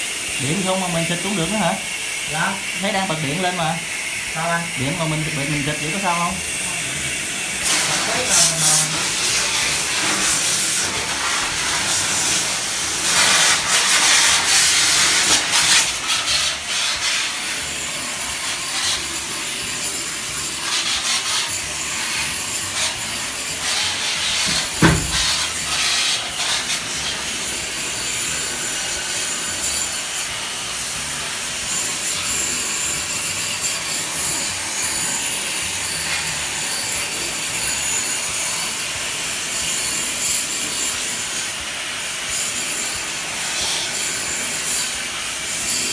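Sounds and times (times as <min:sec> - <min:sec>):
water spray hissing: 0:00.0 - 0:38.6
single knock: 0:24.5 - 0:25.4.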